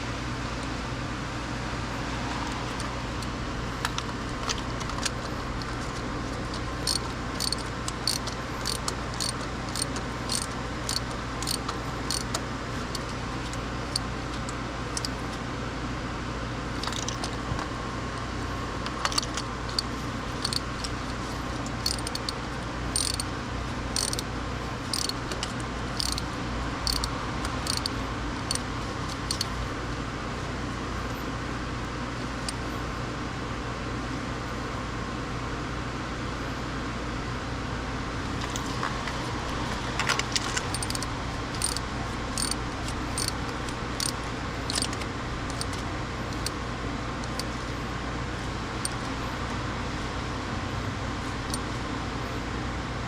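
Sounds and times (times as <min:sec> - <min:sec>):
steady low hum: 0:00.0 - 0:53.0
metal tool clicks: 0:06.4 - 0:15.2, 0:16.8 - 0:17.7, 0:18.8 - 0:23.3, 0:24.0 - 0:24.2, 0:24.9 - 0:29.5, 0:40.0 - 0:41.8, 0:42.4 - 0:46.6, 0:47.2 - 0:47.5.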